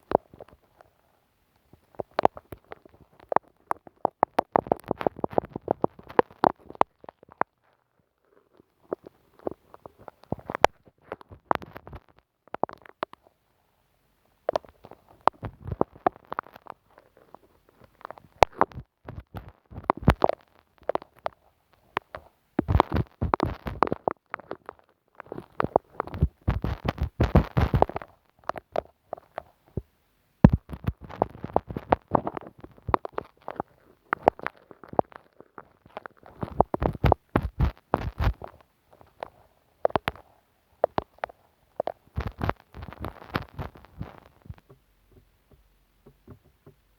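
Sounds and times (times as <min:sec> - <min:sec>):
glue stick rubbing on microphone: 0:25.4 - 0:29.5, 0:30.5 - 0:44.8.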